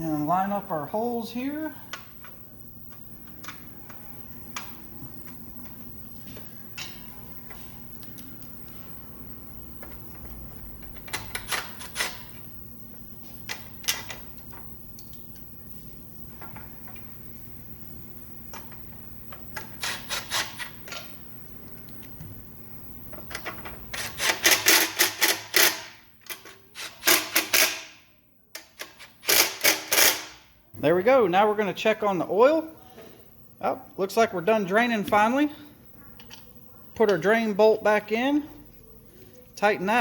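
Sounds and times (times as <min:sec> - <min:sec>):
hand ratchet clicking: 0:11.0 - 0:12.3, 0:19.8 - 0:21.0, 0:23.3 - 0:27.9, 0:28.6 - 0:30.4.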